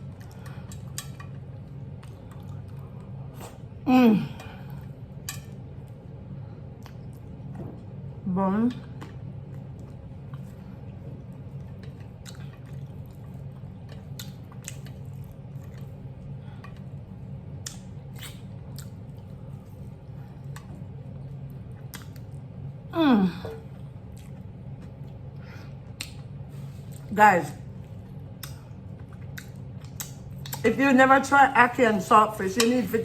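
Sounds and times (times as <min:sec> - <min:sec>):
chewing with wet mouth clicks: 0:00.0 - 0:03.7, 0:06.7 - 0:07.5, 0:08.8 - 0:22.5, 0:24.0 - 0:26.3, 0:27.7 - 0:30.7
steady low hum: 0:00.0 - 0:33.0
short falling vocal hum: 0:22.9 - 0:23.7.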